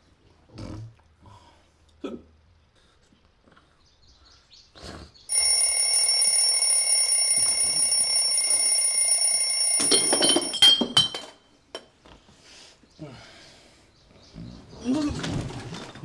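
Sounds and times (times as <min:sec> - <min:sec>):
alarm bell ringing: 0:05.3 - 0:11.1.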